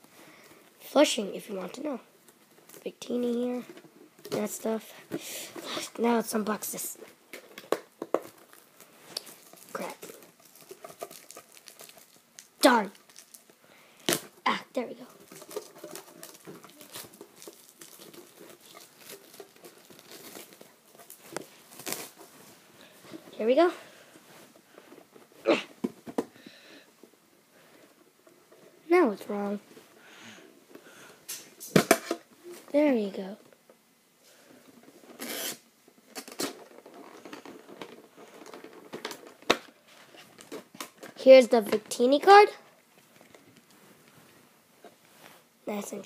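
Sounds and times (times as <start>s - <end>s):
plastic packaging crinkling: 7.0s - 14.3s, 15.0s - 23.0s.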